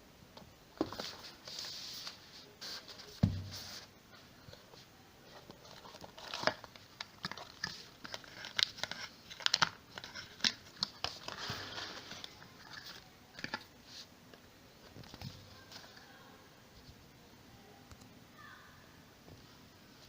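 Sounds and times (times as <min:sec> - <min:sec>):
packaging crinkling and rustling: 0:05.3 - 0:13.7.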